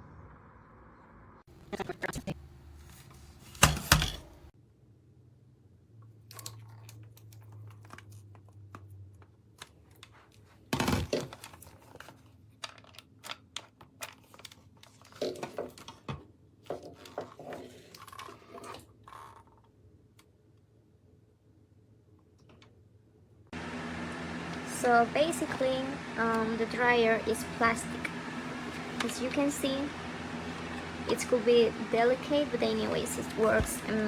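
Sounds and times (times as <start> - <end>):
crinkling and rustling: 6.3 - 19.7, 32.8 - 34.0.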